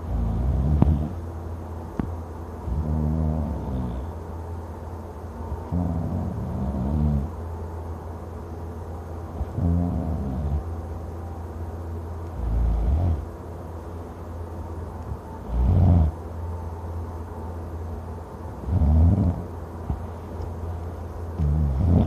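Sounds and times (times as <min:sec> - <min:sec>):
man snoring loudly: 0:00.0 - 0:01.2, 0:02.7 - 0:04.1, 0:05.7 - 0:07.3, 0:09.6 - 0:10.6, 0:15.5 - 0:16.1, 0:18.7 - 0:19.4, 0:21.4 - 0:22.0
steady low hum: 0:00.0 - 0:22.0.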